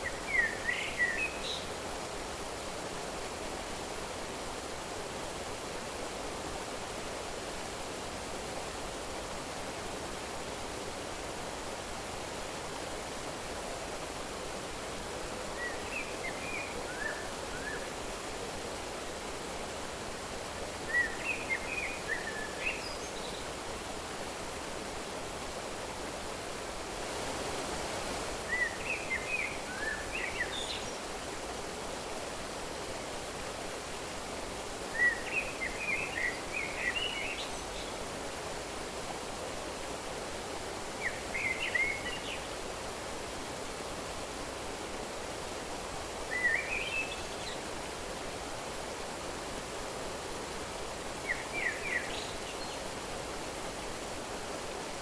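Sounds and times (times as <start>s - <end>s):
songbird chirping: 0.0s - 1.8s, 15.5s - 18.5s, 20.8s - 24.3s, 28.4s - 31.3s, 34.8s - 38.0s, 40.9s - 42.6s, 46.1s - 47.7s, 51.2s - 52.9s
steady outdoor hiss: 0.0s - 55.0s.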